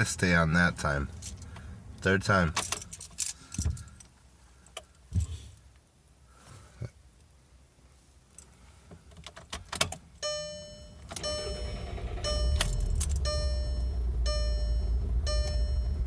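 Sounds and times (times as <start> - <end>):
keys jingling in ignition: 1.1 - 1.5, 2.5 - 4.1, 10.9 - 16.0
car engine cranking and starting: 10.2 - 16.0
dashboard warning chime: 10.2 - 16.0.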